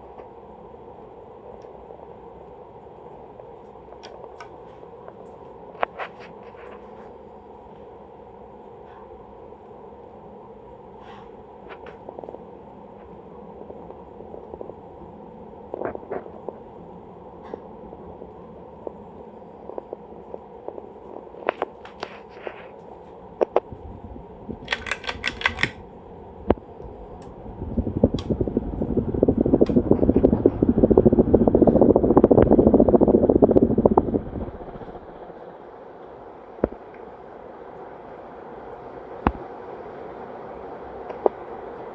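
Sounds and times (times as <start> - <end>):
ceiling fan motor hum: 0.0 - 41.9.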